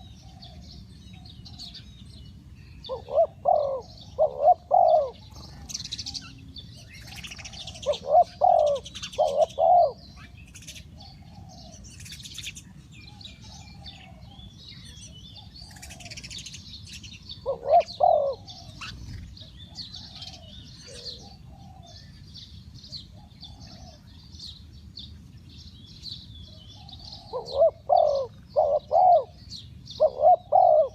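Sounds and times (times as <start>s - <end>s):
dove cooing: 0.0s - 1.9s, 2.8s - 22.2s, 22.9s - 24.2s, 26.8s - 30.9s
small birds chirping: 0.0s - 30.9s.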